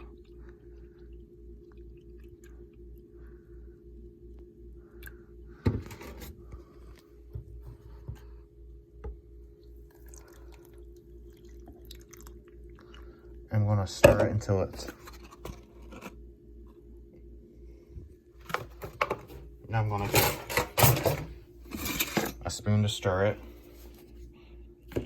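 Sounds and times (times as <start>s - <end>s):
electrical hum: 0.0s - 25.0s
milk being poured: 9.6s - 13.4s.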